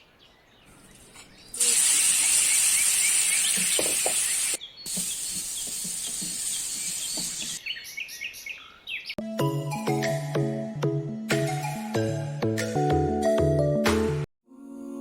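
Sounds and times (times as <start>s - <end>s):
birds chirping: 0.0s - 9.2s.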